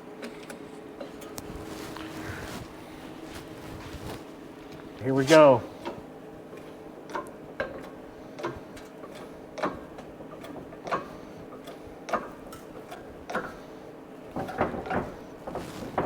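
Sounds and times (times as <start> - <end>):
steady hum: 0.0 - 10.0.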